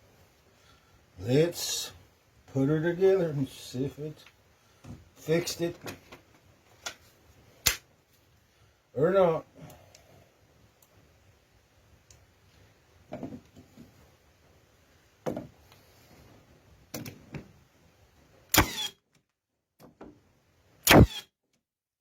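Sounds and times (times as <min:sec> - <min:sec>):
nail gun firing sharp shots: 0:18.5 - 0:19.0, 0:20.8 - 0:21.3.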